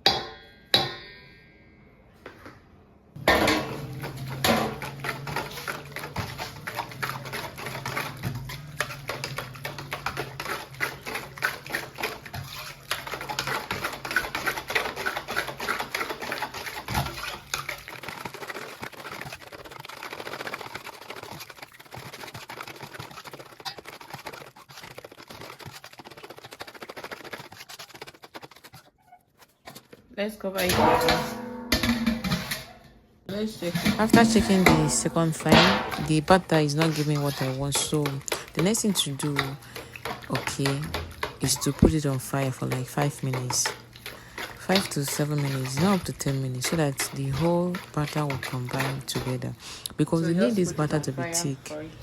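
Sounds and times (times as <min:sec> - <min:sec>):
utensil scraping a mixing bowl: 0:03.2 - 0:30.0, 0:30.6 - 0:52.0.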